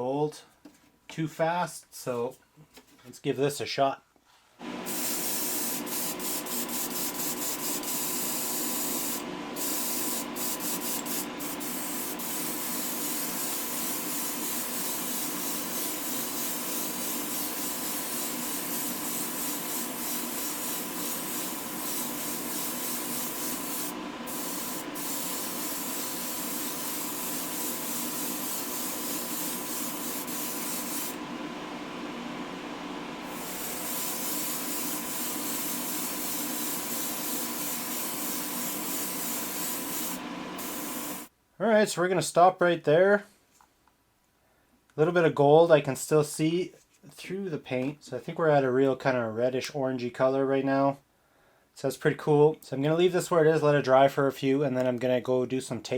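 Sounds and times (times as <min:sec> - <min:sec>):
airbrush air hiss: 0:04.7 - 0:31.2, 0:33.2 - 0:41.3.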